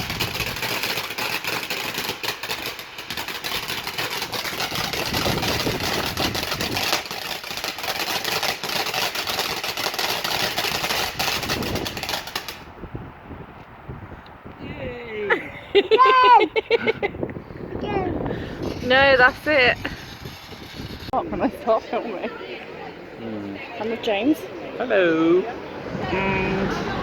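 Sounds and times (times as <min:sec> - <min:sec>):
firework crackling and fizzing: 0:00.0 - 0:12.9, 0:17.9 - 0:21.8.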